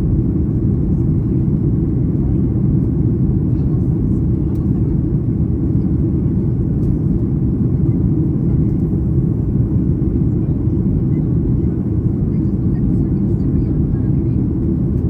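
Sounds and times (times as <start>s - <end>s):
airplane cabin engine rumble: 0.0s - 15.0s.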